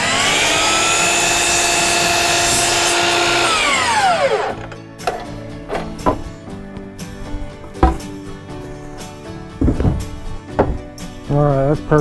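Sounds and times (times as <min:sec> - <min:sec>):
power saw cutting wood: 0:00.0 - 0:06.3.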